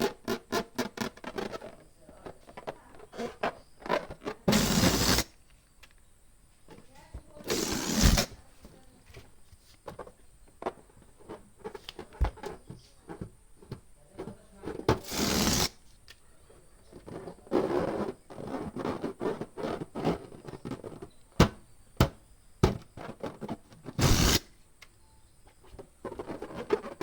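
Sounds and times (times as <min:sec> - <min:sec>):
balloon pump whooshes: 0:04.5 - 0:05.3, 0:07.4 - 0:08.4, 0:15.0 - 0:15.8, 0:24.0 - 0:24.5
small clicks and rubbing: 0:08.8 - 0:14.8.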